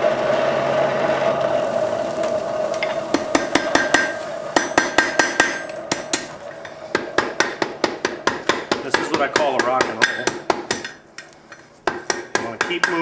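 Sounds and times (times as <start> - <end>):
steady hum: 0.0 - 13.0
hammer ringing on anvil: 2.8 - 13.0.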